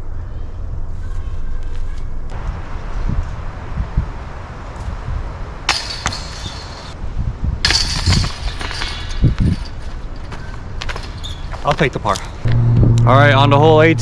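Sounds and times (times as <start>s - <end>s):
wind buffeting microphone: 2.2s - 11.0s
metal chains jingling: 5.7s - 7.0s, 7.6s - 11.7s.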